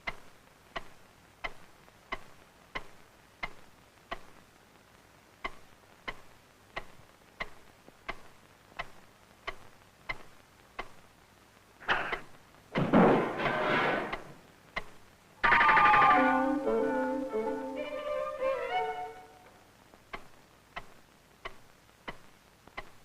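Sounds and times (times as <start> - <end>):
clock ticking: 0.0 - 11.2, 11.9 - 12.6, 14.1 - 23.0
loud sound: 15.4 - 19.5.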